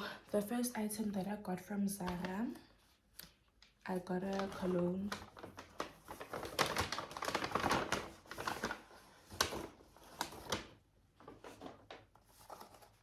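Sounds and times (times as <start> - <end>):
paper bag rustling and crinkling: 3.6 - 13.0.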